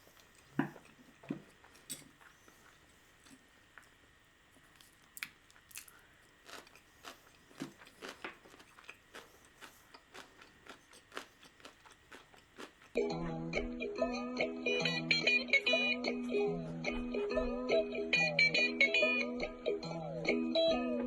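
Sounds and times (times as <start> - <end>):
person chewing with wet smacks: 0.0 - 4.0, 4.6 - 13.0.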